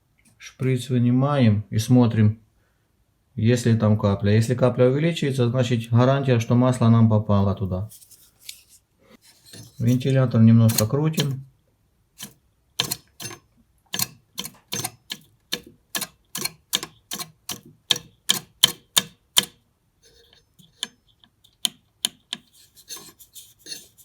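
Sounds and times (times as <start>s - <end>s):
cooling fan clicking when flicked: 10.7s - 11.4s.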